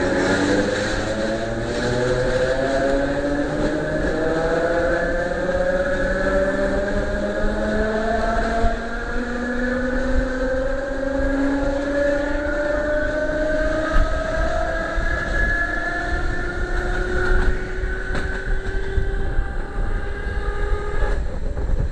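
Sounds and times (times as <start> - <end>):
wheels rumbling on rail: 0.0 - 21.9
electric train motor whine: 13.0 - 21.6.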